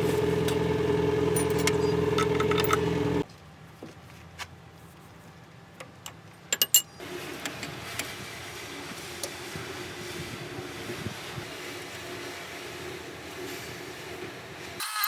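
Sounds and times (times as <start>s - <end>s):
low hum: 0.0s - 3.2s.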